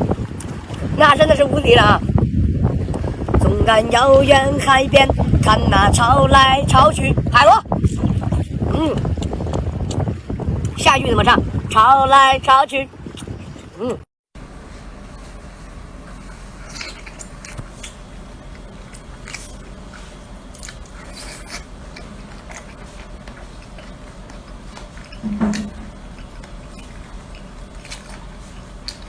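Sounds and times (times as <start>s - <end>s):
chewing and squelching: 0.1s - 0.9s, 7.8s - 10.9s, 13.0s - 14.0s, 14.7s - 29.0s.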